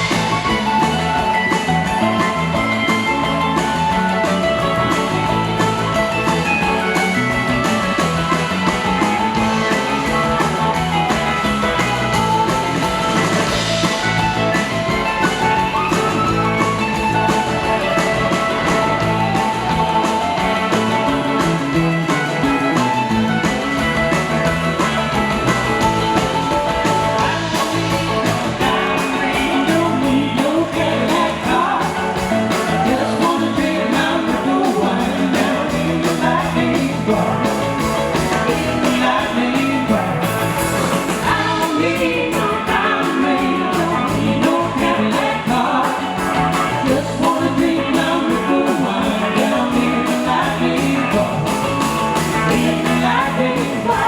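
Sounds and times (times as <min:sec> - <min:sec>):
blues-rock band playing: 0:00.0 - 0:54.0
person singing: 0:27.1 - 0:54.0.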